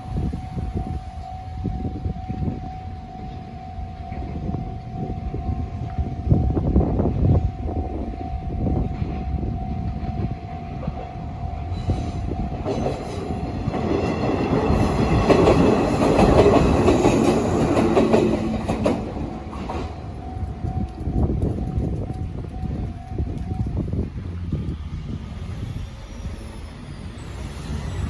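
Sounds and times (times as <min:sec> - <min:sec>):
level-crossing alarm ringing: 0:00.0 - 0:23.9
train wheels clattering over rails: 0:11.7 - 0:23.1.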